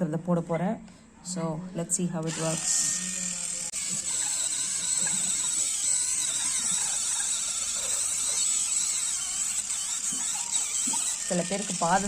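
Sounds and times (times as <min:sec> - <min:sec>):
electric callus remover whining: 0:02.2 - 0:12.0
roller grinding skin: 0:02.6 - 0:12.0.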